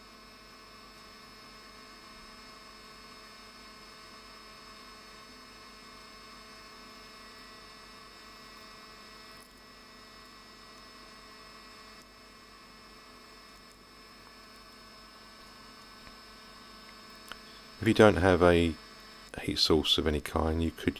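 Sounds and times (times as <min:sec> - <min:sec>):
electrical hum: 0:00.0 - 0:20.9
faint high whine: 0:00.0 - 0:20.9.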